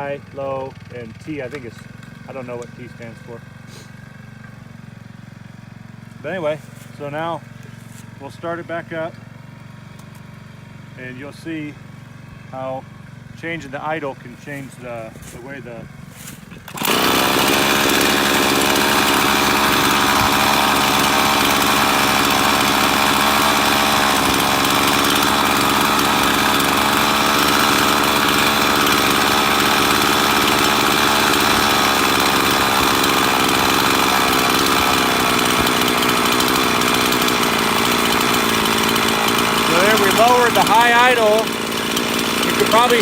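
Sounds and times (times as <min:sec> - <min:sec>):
chainsaw engine idling fast: 0:00.0 - 0:43.0.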